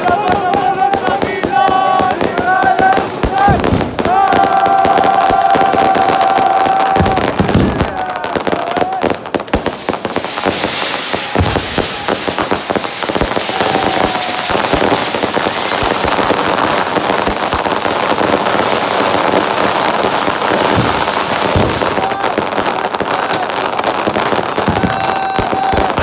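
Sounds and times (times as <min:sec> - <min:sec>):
fireworks bangs and pops: 0:00.0 - 0:26.0
fireworks crackling: 0:00.0 - 0:26.0
firework whistle: 0:09.6 - 0:22.2.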